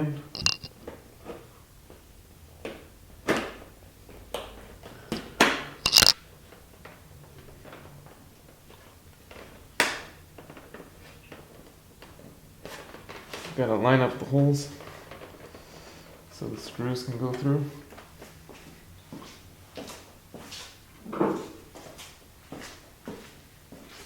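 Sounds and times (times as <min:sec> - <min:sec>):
sharp plastic clacks: 0:00.4 - 0:00.7, 0:05.8 - 0:06.2.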